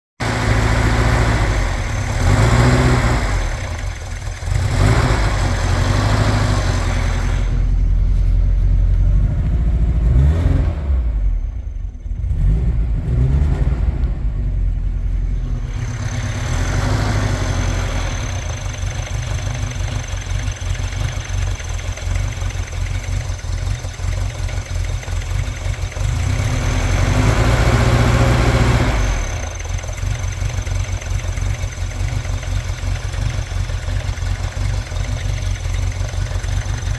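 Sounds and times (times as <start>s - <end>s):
engine revving: 0.2s - 36.9s.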